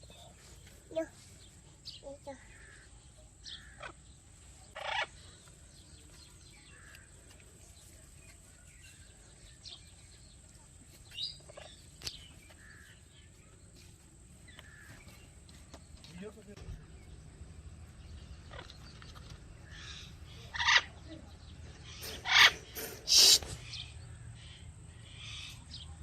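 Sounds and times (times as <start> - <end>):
parakeet chirping and squawking: 4.8 - 5.1, 19.8 - 21.0, 21.8 - 23.8.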